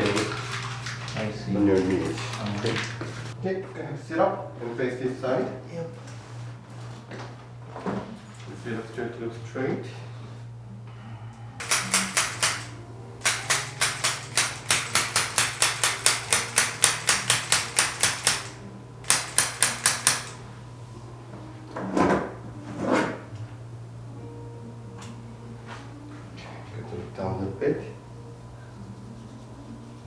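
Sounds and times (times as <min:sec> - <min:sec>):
rapid percussive taps: 0:11.6 - 0:20.4.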